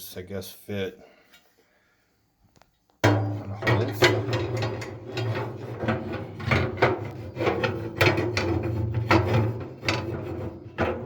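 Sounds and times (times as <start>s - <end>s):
metal bracket scraping and clanking: 3.0s - 11.0s.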